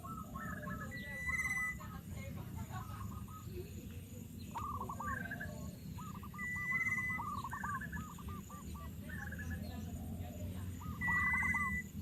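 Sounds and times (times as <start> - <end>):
birds calling: 0.0 - 12.0.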